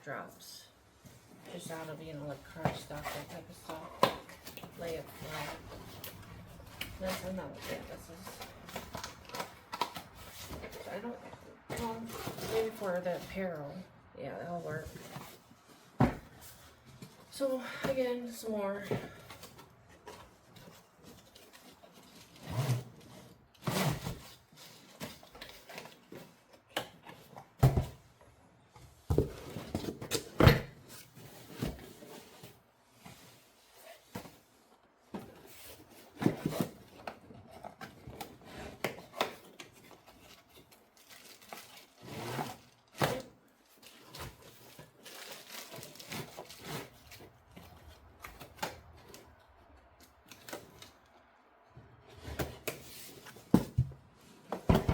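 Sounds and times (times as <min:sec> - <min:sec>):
wrapping rustling and tearing: 0:19.4 - 0:27.4, 0:31.0 - 0:51.4.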